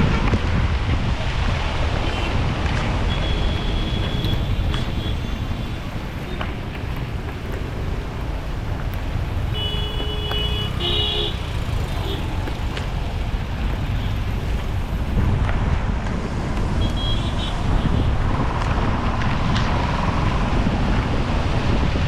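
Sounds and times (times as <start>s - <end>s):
wind on microphone: 0.0s - 10.9s, 11.5s - 22.0s
road traffic: 0.0s - 22.0s
vehicle horn honking: 9.5s - 11.4s, 16.8s - 17.9s.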